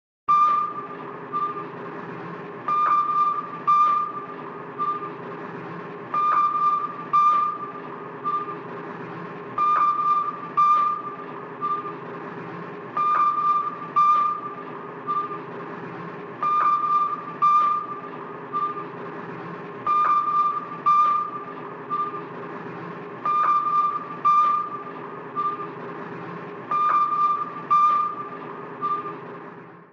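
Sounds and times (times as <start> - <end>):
low machinery hum: 0.3 - 29.9
short high electronic bleeps: 26.7 - 29.2.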